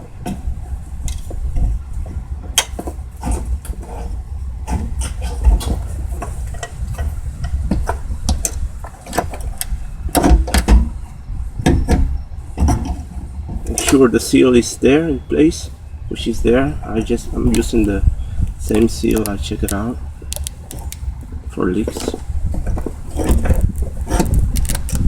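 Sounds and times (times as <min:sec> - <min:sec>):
steady low rumble: 0:00.0 - 0:25.0
clicks and knocks of hard parts: 0:18.7 - 0:21.0.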